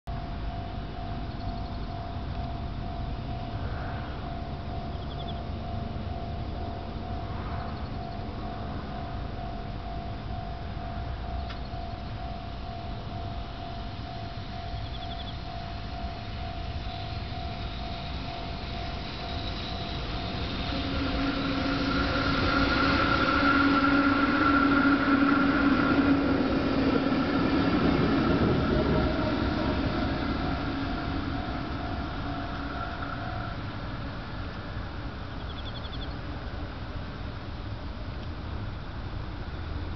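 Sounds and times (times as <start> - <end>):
train wheels rumbling on rails: 0.1 - 39.9
train whine: 0.1 - 39.9
level crossing alarm ringing: 8.0 - 33.8.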